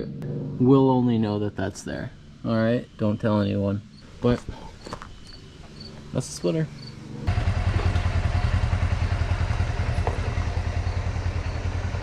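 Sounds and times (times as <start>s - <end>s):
small gas engine running: 7.2s - 12.0s.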